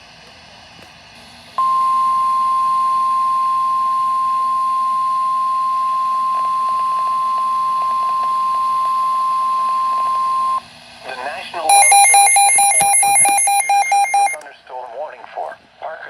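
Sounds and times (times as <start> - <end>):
steady high-pitched alert tone: 11.7 - 14.4.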